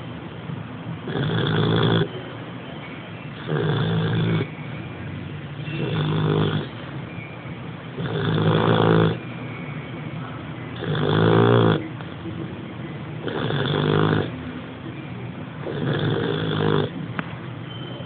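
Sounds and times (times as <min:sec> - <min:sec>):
dog snoring: 0:01.0 - 0:02.1, 0:03.4 - 0:04.5, 0:05.8 - 0:06.7, 0:08.0 - 0:09.2, 0:10.8 - 0:11.8, 0:13.2 - 0:14.3, 0:15.6 - 0:17.0.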